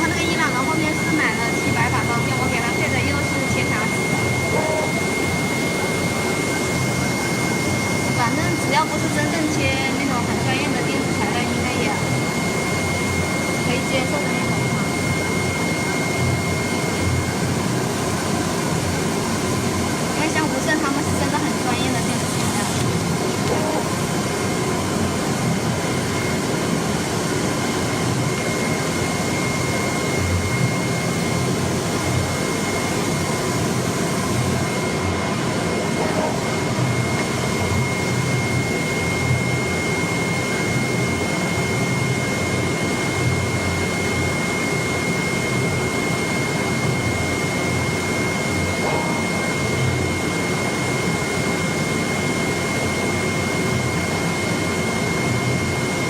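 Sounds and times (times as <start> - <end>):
high whine: 0.0 - 17.5, 20.1 - 41.2, 45.2 - 51.4
cutting plotter running: 35.0 - 39.4.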